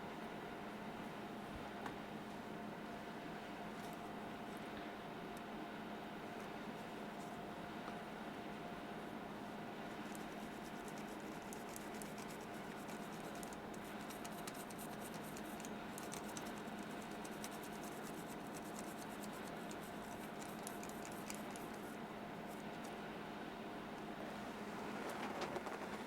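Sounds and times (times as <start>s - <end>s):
electrical hum: 0.0s - 26.0s
small tools scratching and ticking: 10.0s - 21.9s.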